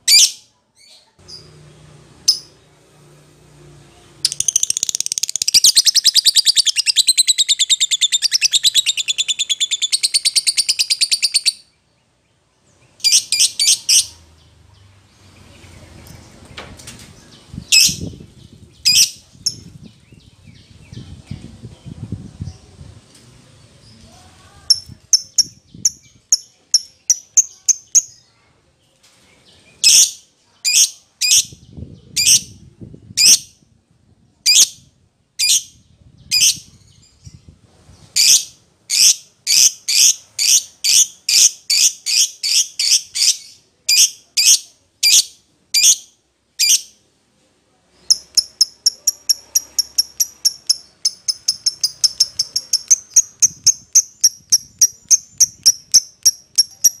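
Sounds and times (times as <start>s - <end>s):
lovebird shrill chirping: 0.0s - 0.4s, 4.2s - 11.7s, 13.0s - 14.2s, 18.8s - 19.7s, 38.2s - 47.0s, 48.0s - 57.0s.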